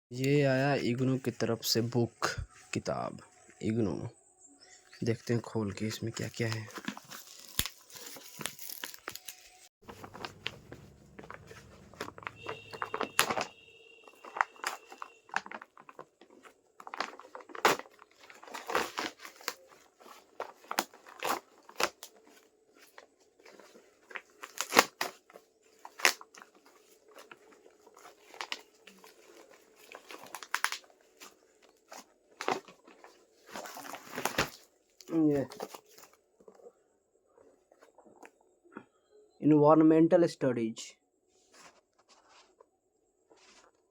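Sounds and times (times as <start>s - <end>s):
packaging crinkling and tearing: 6.0s - 36.2s.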